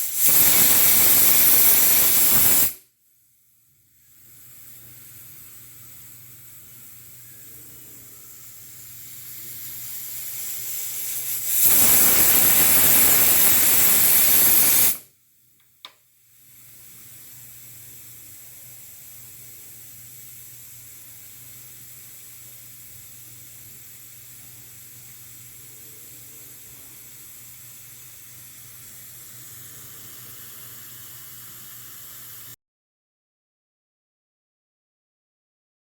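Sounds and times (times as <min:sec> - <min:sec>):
pressure cooker hissing: 0:00.0 - 0:02.8, 0:04.0 - 0:15.0, 0:16.3 - 0:32.6
pressure cooker whistle blowing: 0:00.0 - 0:02.8, 0:09.8 - 0:15.0
click: 0:15.6 - 0:16.0.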